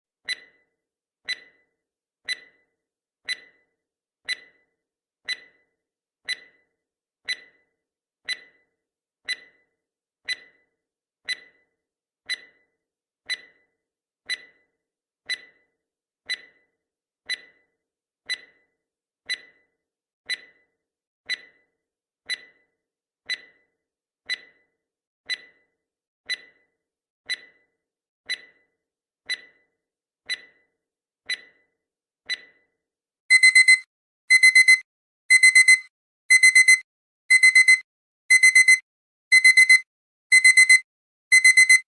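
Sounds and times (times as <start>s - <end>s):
timer ticking: 0.2s - 6.7s, 7.3s - 8.7s, 9.3s - 11.7s, 12.3s - 12.7s, 13.3s - 13.7s, 14.3s - 14.7s, 15.3s - 15.7s, 16.3s - 16.7s, 17.3s - 17.7s, 18.3s - 18.7s, 19.3s - 19.7s, 20.3s - 20.7s, 21.3s - 21.7s, 22.3s - 22.7s, 23.3s - 23.7s, 24.3s - 24.7s, 25.3s - 25.7s, 26.3s - 26.7s, 27.3s - 27.7s, 28.3s - 28.7s, 29.3s - 29.7s, 30.3s - 30.7s, 31.3s - 31.7s, 32.3s - 32.6s, 33.3s - 41.9s.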